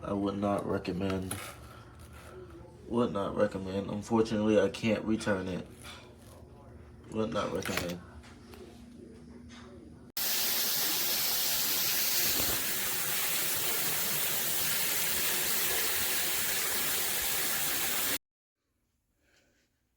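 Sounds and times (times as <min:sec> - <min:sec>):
high-pressure shower spraying: 0:10.2 - 0:18.2.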